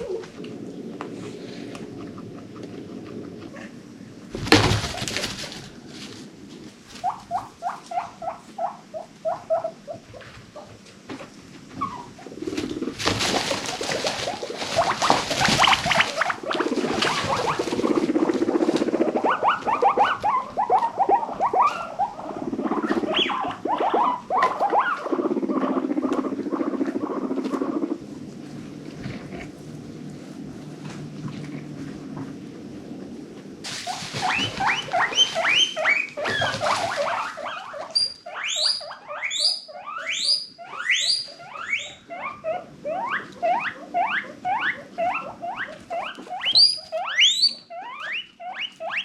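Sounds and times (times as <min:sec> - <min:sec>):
guinea pigs squeaking: 0:00.0 - 0:00.4, 0:04.3 - 0:10.8, 0:11.7 - 0:30.6, 0:33.6 - 0:49.0
rustling: 0:02.6 - 0:08.7, 0:10.1 - 0:25.2, 0:25.8 - 0:39.3.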